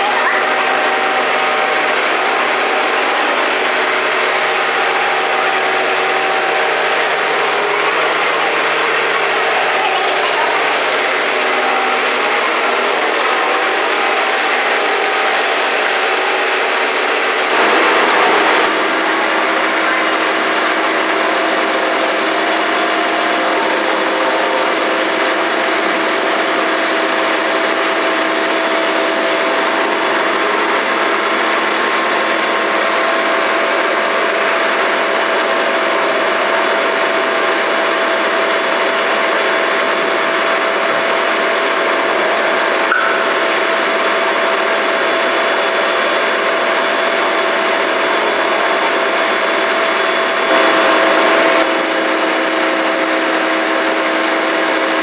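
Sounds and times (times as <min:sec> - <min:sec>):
lathe machine hum: 0:00.0 - 0:19.5, 0:49.9 - 0:52.7.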